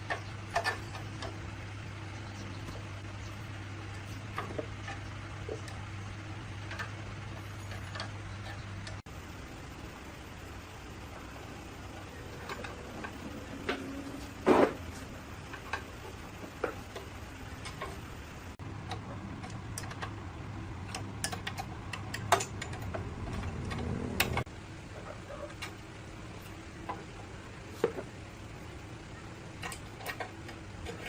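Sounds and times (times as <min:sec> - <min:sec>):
steady low noise: 0:08.2 - 0:29.6
tools clicking and tapping: 0:18.9 - 0:20.2, 0:20.8 - 0:24.5.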